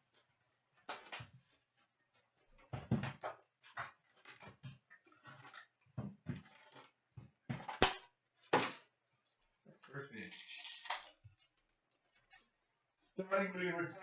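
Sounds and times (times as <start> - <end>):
packaging rustling and tearing: 9.9 - 11.2.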